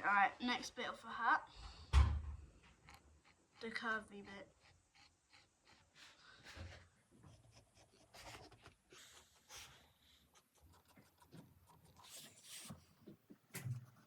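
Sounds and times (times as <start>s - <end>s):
pencil scratching on paper: 2.7s - 13.2s.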